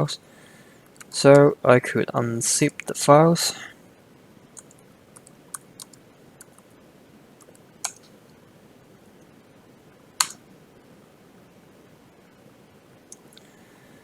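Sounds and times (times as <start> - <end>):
computer keyboard keystrokes: 4.6 - 6.7, 7.4 - 8.1, 10.2 - 10.4.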